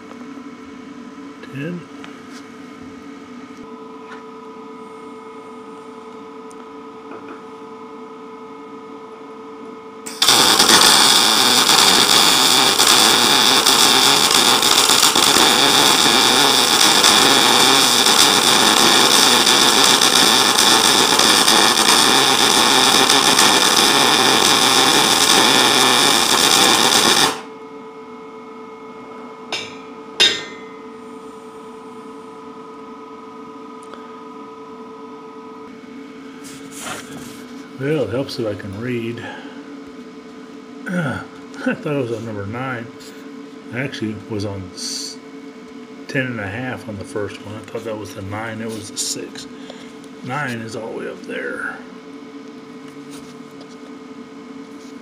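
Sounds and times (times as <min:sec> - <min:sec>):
welding arc crackling: 0:10.1 - 0:27.5.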